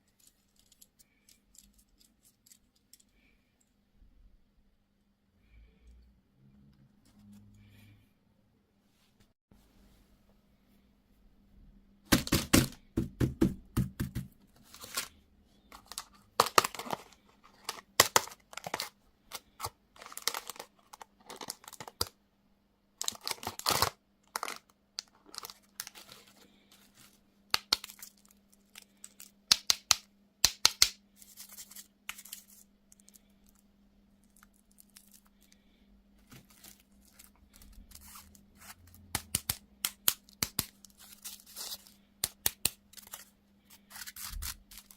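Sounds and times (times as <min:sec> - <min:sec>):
wrappers tearing and crinkling: 0:15.8 - 0:22.1, 0:23.0 - 0:29.3, 0:34.2 - 0:39.5, 0:40.1 - 0:44.9.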